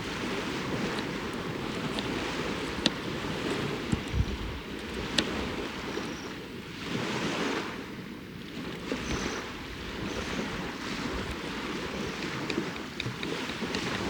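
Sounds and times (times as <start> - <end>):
small waves washing onto shore: 0.0 - 14.0
wind: 0.0 - 14.0.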